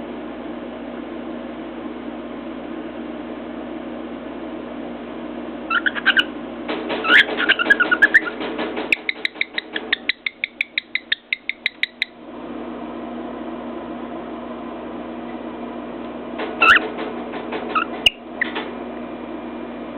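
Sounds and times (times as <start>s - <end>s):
cockatiel chirping and whistling: 5.7s - 6.3s, 7.0s - 8.3s, 9.0s - 12.2s, 16.6s - 16.8s
beak tapping on mirror: 5.7s - 12.1s.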